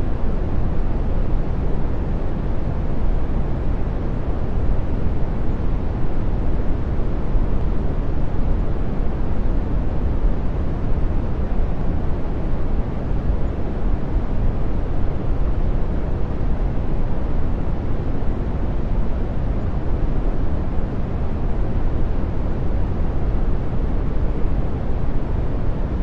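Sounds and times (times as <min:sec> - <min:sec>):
brown noise rush: 0:00.0 - 0:26.0.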